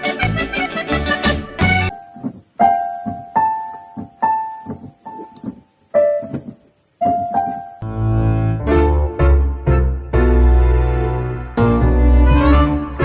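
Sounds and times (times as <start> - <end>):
bass accompaniment: 0.0 - 2.0, 7.3 - 13.0
slow piano melody: 1.9 - 13.0.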